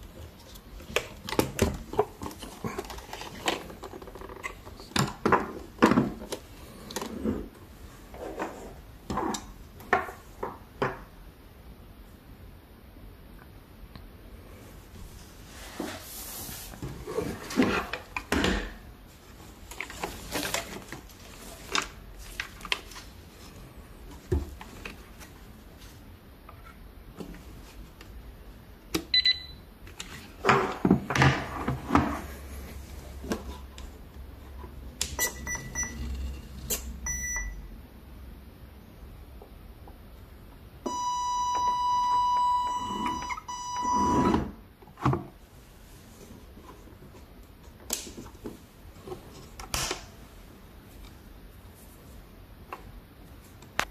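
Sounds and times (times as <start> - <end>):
short electronic beeps: 35.2 - 36.0, 37.0 - 37.6, 40.9 - 44.3
loud steady electronic tone: 40.9 - 44.4.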